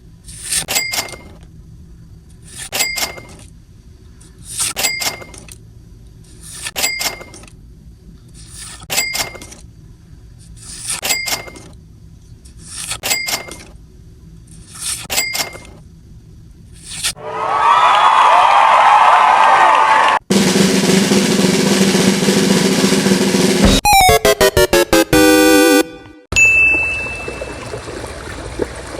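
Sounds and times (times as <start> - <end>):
quick double chime: 26.3 - 27.7.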